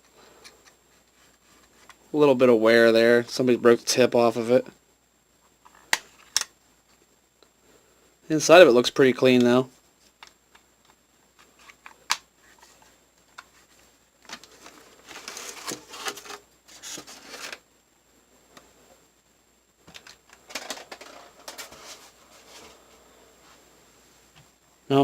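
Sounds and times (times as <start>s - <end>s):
hands rustling and scraping plastic: 11.4s - 17.6s, 19.9s - 22.9s.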